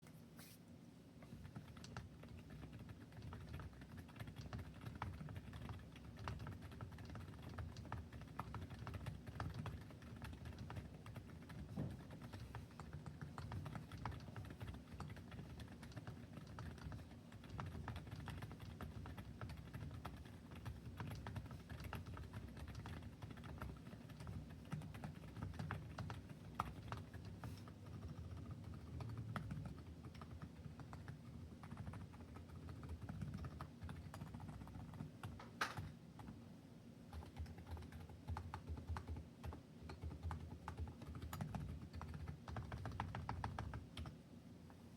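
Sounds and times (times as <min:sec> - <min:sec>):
typing on mechanical keyboard: 0:01.4 - 0:36.4, 0:37.1 - 0:44.2.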